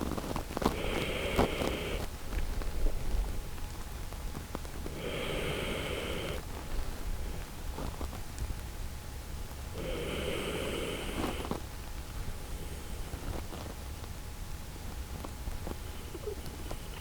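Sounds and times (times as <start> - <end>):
dog snoring: 0.6 - 2.1, 4.9 - 6.5, 9.7 - 11.6.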